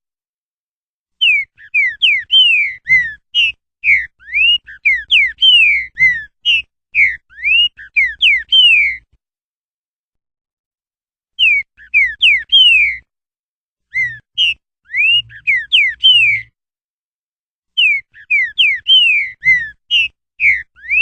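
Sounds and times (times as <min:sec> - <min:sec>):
bird singing whistled notes: 0:01.2 - 0:09.2, 0:11.4 - 0:13.1, 0:13.9 - 0:16.6, 0:17.8 - 0:21.0.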